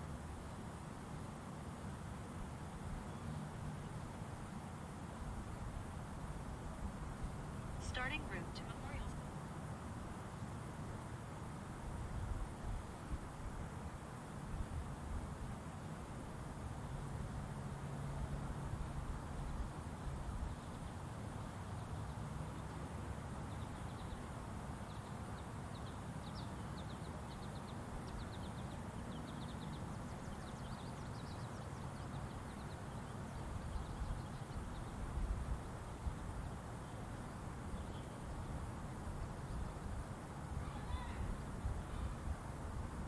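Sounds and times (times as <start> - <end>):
small birds chirping: 18.8 - 42.2.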